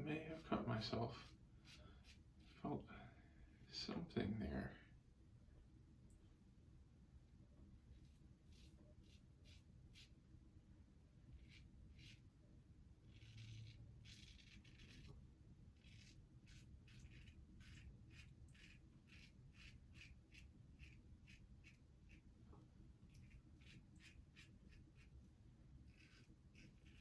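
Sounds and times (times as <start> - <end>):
razor scraping stubble: 8.0 - 10.1, 11.3 - 12.2, 13.1 - 15.2, 15.8 - 22.3, 23.1 - 27.0.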